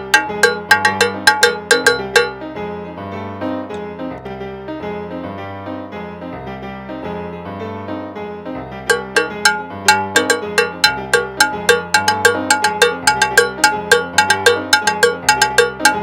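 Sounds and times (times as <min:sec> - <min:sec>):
cowbell struck with a beater: 0:00.0 - 0:02.4, 0:08.9 - 0:16.0
piano music: 0:00.0 - 0:16.0.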